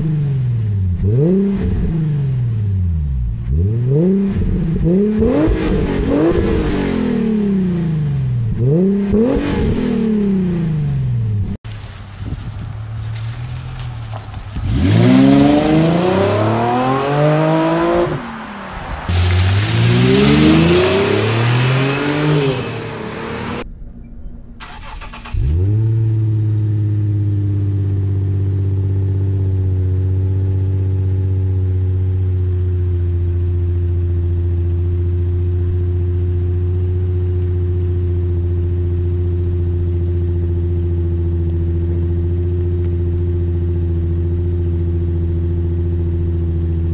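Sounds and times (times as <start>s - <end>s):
car exhaust revving on acceleration: 0.0s - 11.6s, 12.3s - 23.7s, 24.8s - 46.9s
car engine cold start: 23.7s - 26.4s.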